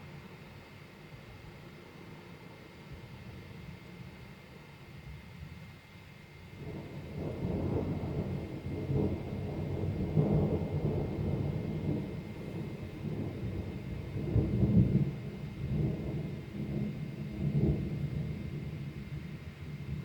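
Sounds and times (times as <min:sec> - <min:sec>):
thunder rumbling: 0:06.6 - 0:20.0.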